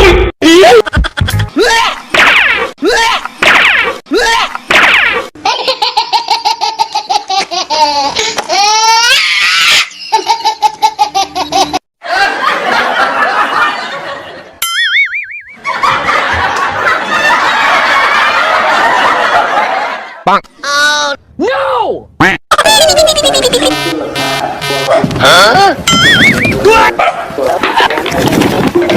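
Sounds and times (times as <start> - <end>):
crowd laughing loudly: 10.0 - 14.6, 15.6 - 20.2, 22.6 - 24.9
short warbling tone: 14.6 - 15.6, 25.9 - 26.7.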